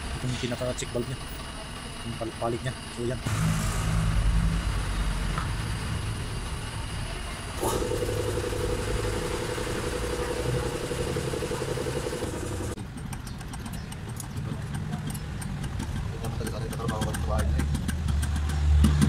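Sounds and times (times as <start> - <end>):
steady buzz: 0.0 - 12.8
diesel engine idling: 0.0 - 13.0.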